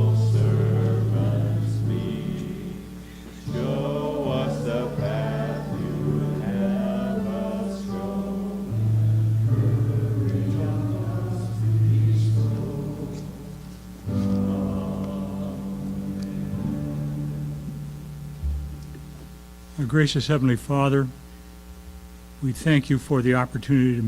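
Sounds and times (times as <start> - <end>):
congregation singing a hymn: 0.0 - 19.0
instrumental accompaniment low notes: 0.0 - 19.3.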